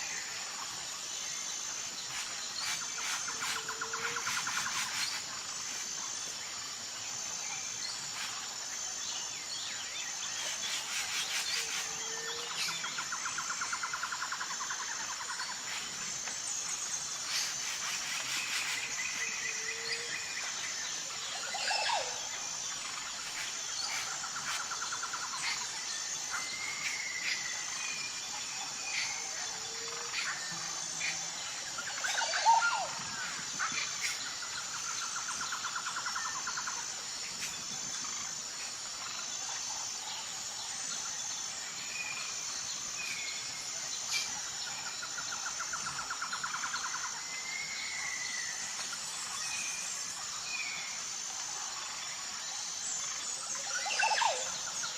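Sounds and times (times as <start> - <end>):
insect chirping: 0.0 - 54.9
birds calling and singing: 7.3 - 54.9.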